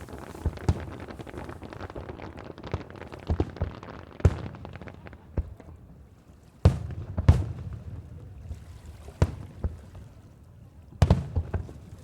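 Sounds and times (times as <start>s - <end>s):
firework shells bursting: 0.0s - 5.6s.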